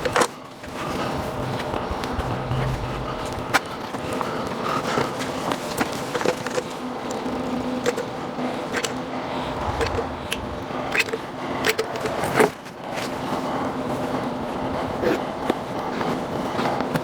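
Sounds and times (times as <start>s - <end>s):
steady hum: 1.2s - 4.0s, 9.2s - 11.6s.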